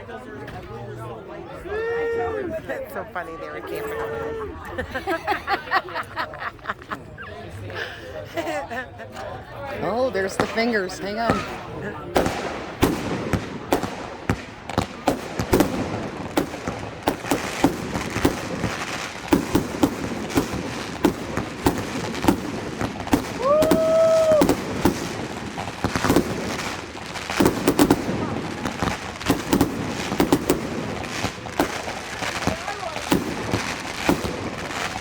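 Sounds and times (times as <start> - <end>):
fireworks bangs and crackles: 9.8 - 35.0.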